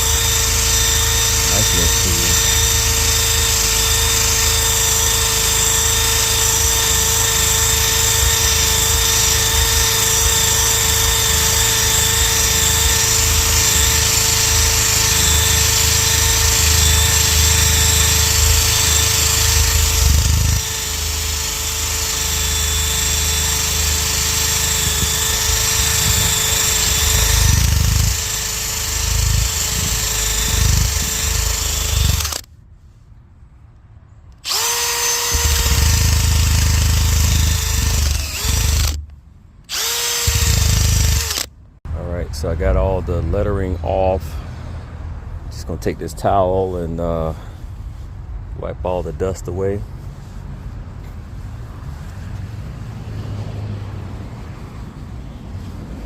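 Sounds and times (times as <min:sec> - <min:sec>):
power tool motor whining: 0:00.0 - 0:32.5, 0:34.4 - 0:41.5.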